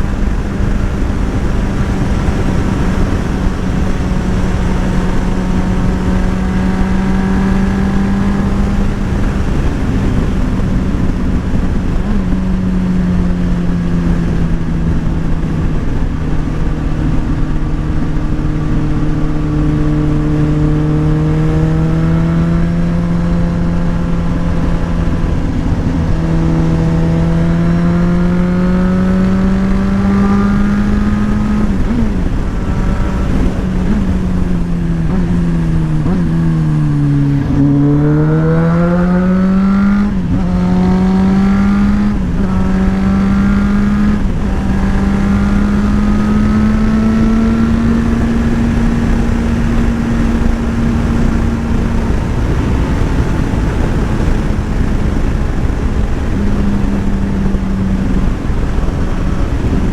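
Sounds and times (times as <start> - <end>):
motorcycle engine running: 0.0 - 59.9
wind rush on microphone: 0.0 - 59.9.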